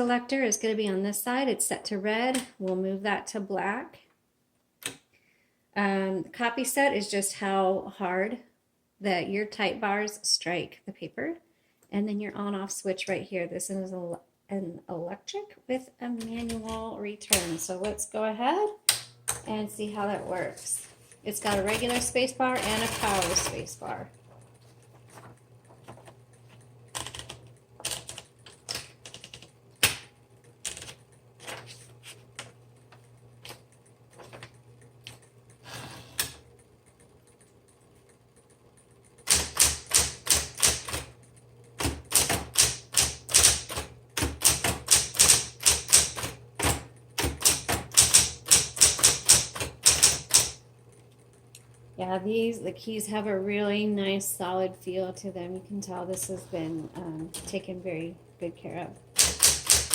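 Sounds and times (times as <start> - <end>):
typewriter motor humming: 19.0 - 52.1, 55.9 - 59.9
fast typing: 21.3 - 23.8, 26.9 - 29.6, 30.6 - 31.1, 39.1 - 41.1, 41.8 - 50.6, 59.1 - 59.9
typewriter key strikes: 39.2 - 41.1, 41.8 - 50.6, 59.2 - 59.9.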